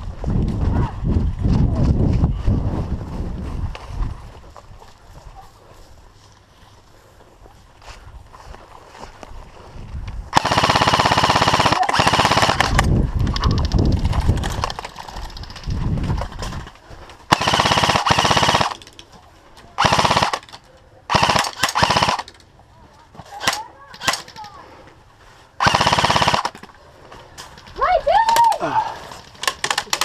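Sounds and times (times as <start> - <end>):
airsoft guns firing bursts: 10.3 - 15.7, 17.3 - 18.9, 19.8 - 22.4, 23.4 - 24.4, 25.6 - 26.7.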